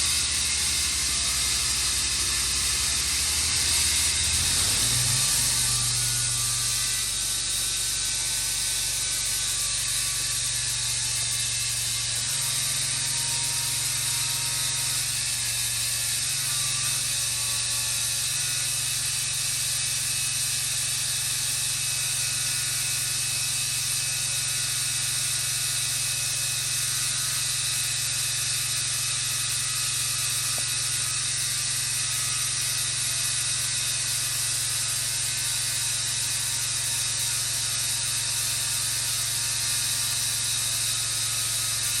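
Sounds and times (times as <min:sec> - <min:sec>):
low machine hum: 0:00.0 - 0:11.8.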